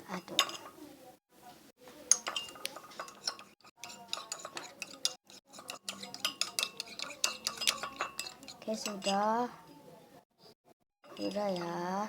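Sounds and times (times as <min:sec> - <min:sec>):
metal spoon stirring in container: 0:00.2 - 0:00.8, 0:02.0 - 0:09.4, 0:11.1 - 0:11.8.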